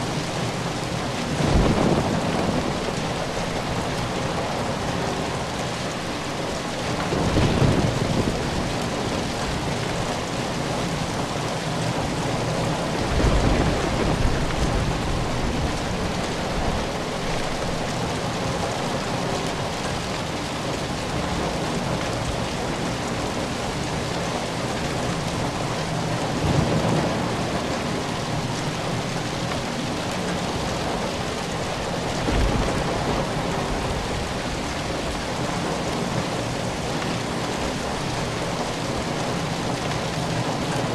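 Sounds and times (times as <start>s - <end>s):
thunder rumbling: 0.0s - 5.6s, 6.9s - 17.9s, 25.4s - 29.0s, 30.0s - 38.2s
steady rain falling: 0.0s - 40.9s.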